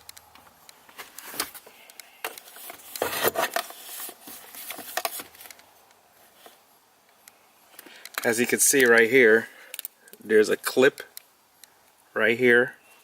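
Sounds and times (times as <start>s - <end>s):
knocks and scraping: 0.4s - 5.6s
small handling clicks and taps: 7.0s - 9.0s, 9.7s - 10.2s.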